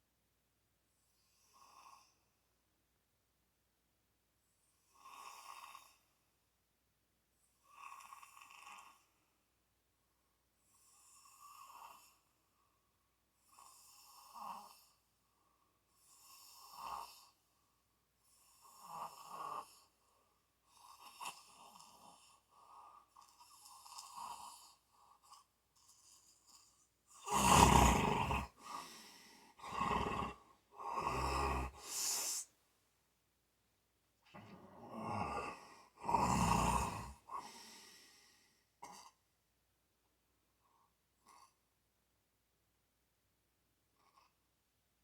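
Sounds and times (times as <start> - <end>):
person snoring: 27.1 - 32.5, 34.4 - 38.2.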